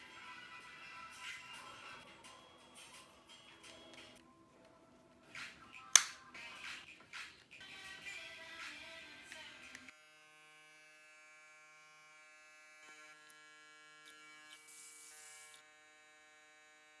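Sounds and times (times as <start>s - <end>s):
hair trimmer buzzing: 9.8s - 17.0s.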